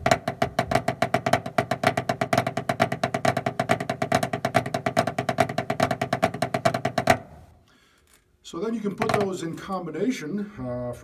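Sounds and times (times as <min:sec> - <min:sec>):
drumsticks on practice pad: 0:00.0 - 0:07.5.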